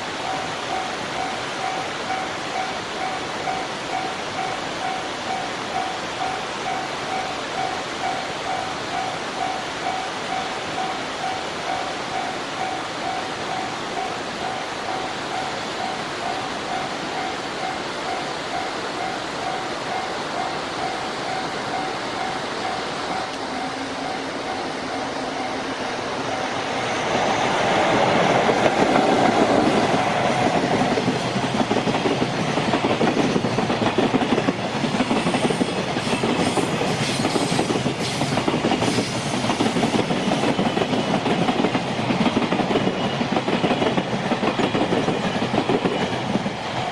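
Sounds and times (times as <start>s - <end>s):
level-crossing warning bell dinging: 0.0s - 27.0s
train wheels clattering over rail joints: 27.8s - 46.9s.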